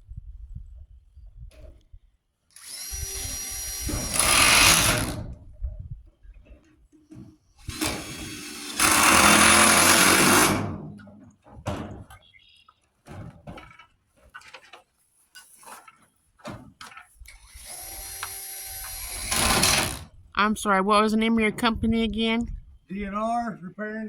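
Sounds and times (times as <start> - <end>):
power tool running in bursts: 2.6 - 5.2, 7.7 - 10.7.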